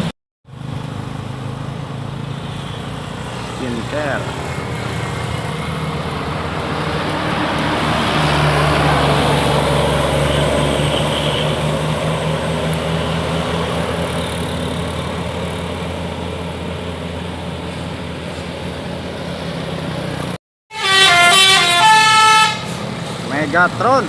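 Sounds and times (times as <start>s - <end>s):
bus passing by: 0.0s - 24.0s.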